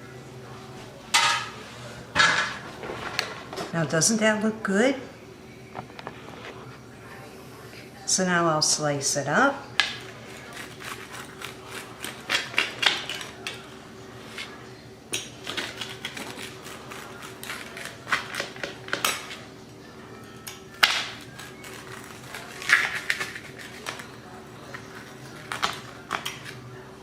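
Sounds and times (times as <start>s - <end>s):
pizza cutter clicking and scraping: 9.8s - 14.6s, 15.2s - 19.5s, 20.8s - 26.7s.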